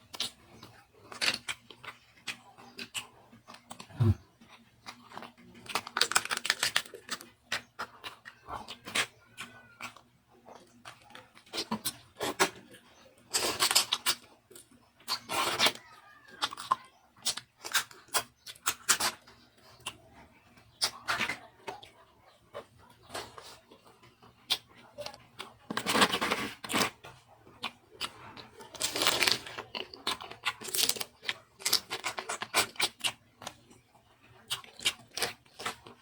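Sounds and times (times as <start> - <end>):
wet chewing and lip smacks: 26.6 - 36.0.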